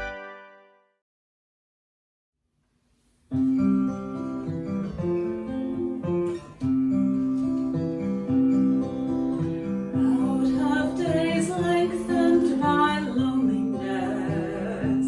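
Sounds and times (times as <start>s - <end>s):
acoustic guitar plucking and strumming: 3.3s - 15.0s.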